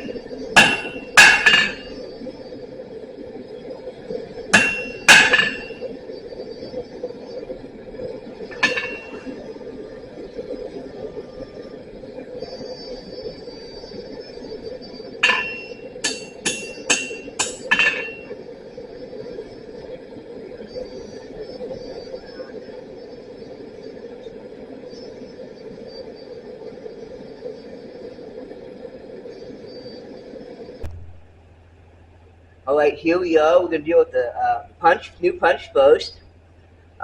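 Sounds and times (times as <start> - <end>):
steady hum: 0.0 - 37.0
hammer ringing on anvil: 0.6 - 1.9, 4.6 - 5.8, 8.6 - 9.2, 15.2 - 18.3.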